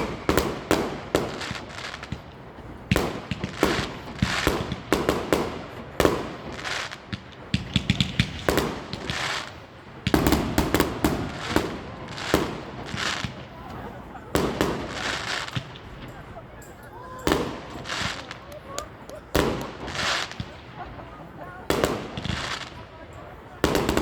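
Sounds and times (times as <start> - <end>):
fireworks bangs and crackling: 0.0 - 24.0.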